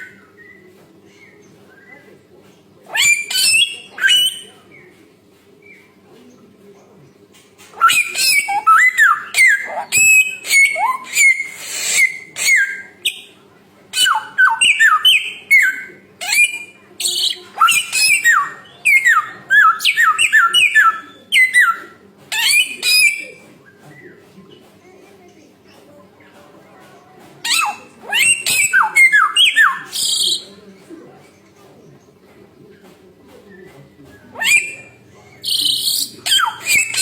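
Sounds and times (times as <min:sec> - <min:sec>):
songbird singing whistled notes: 0:00.0 - 0:02.1, 0:02.9 - 0:04.9, 0:07.8 - 0:13.4, 0:14.0 - 0:24.2, 0:27.4 - 0:30.6, 0:33.4 - 0:37.0.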